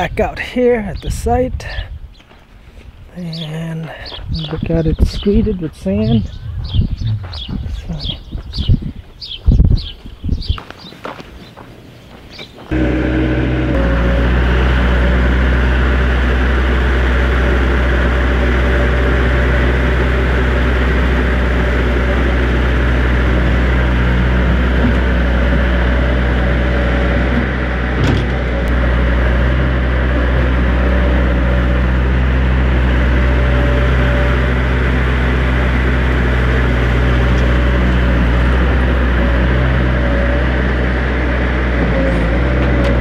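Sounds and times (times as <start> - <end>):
engine humming steadily: 12.7 - 43.0.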